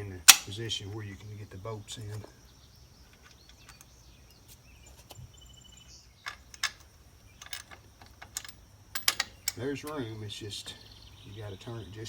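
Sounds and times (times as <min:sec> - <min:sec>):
light clicks and knocks of bolts: 0:00.0 - 0:02.3, 0:03.0 - 0:05.4, 0:06.2 - 0:10.8
faint bird chirps: 0:00.0 - 0:07.8, 0:08.6 - 0:12.0
insects buzzing: 0:00.0 - 0:12.0.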